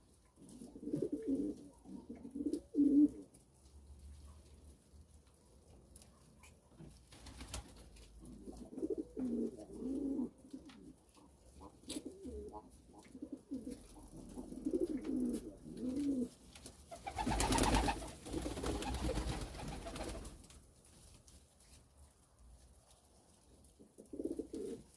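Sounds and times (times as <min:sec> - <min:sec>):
pigeons cooing: 0:00.4 - 0:03.3, 0:08.2 - 0:16.4, 0:24.0 - 0:24.9.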